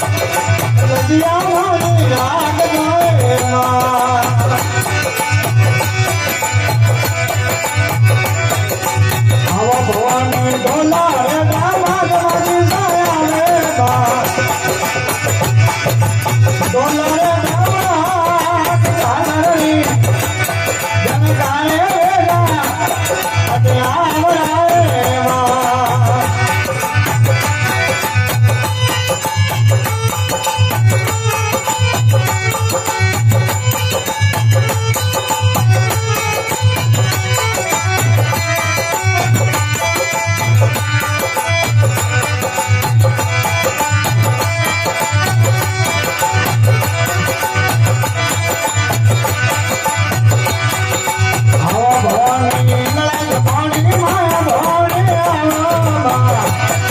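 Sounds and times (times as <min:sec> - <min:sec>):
person singing: 0:00.0 - 0:05.8, 0:08.2 - 0:28.6, 0:51.0 - 0:56.9
instrumental folk music: 0:00.0 - 0:56.9
steady drum beat: 0:00.0 - 0:56.9.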